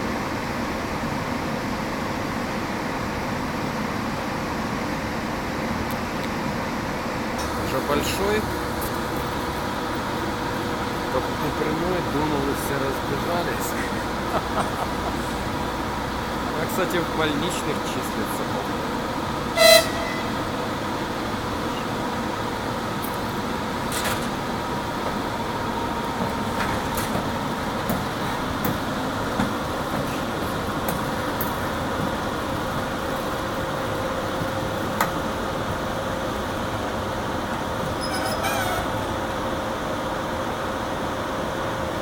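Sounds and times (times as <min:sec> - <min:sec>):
electric locomotive hum: 0:00.0 - 0:42.0
short high-pitched tone: 0:19.6 - 0:20.4.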